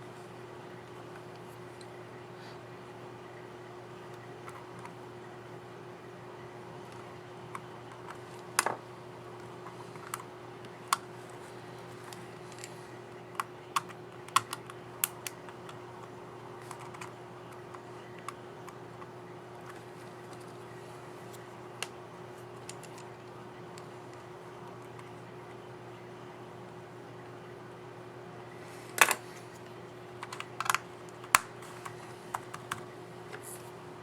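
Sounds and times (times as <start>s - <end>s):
laptop keys clicking: 13.3s - 18.8s.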